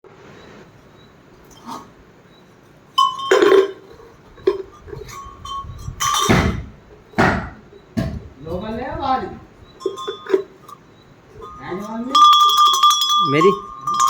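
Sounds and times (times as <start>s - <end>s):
cow bells clanking: 1.4s - 7.9s, 9.6s - 14.0s.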